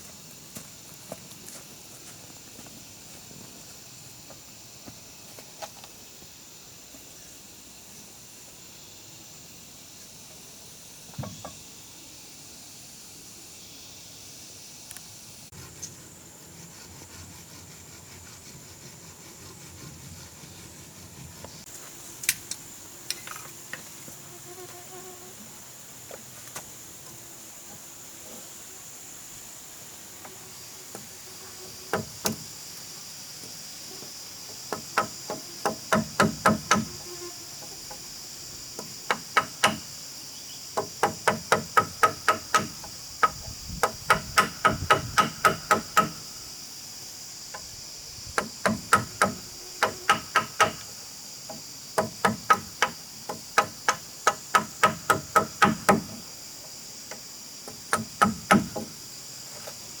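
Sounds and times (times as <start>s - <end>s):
insects buzzing: 0.0s - 60.0s
hammer blows on wood: 40.8s - 46.2s.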